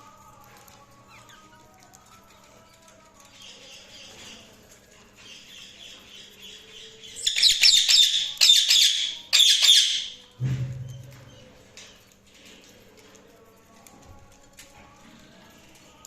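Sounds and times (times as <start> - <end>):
budgies chirping and squawking: 6.8 - 10.2.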